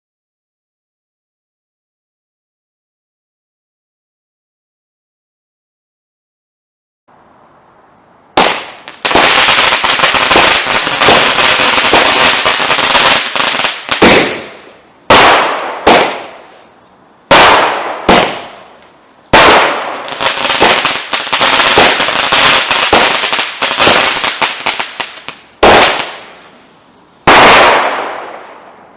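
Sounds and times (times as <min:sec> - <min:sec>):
firework barrage bangs: 0:08.4 - 0:16.5, 0:17.3 - 0:18.7, 0:19.3 - 0:25.0, 0:25.6 - 0:26.4, 0:27.3 - 0:28.6
single firework reports: 0:08.4 - 0:16.5, 0:17.3 - 0:26.4, 0:27.2 - 0:28.9.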